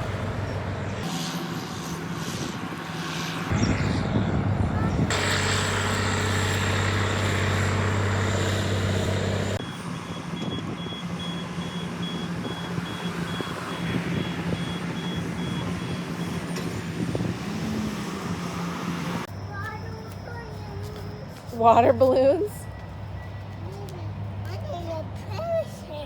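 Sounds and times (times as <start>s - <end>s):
diesel engine running: 0.0s - 24.4s.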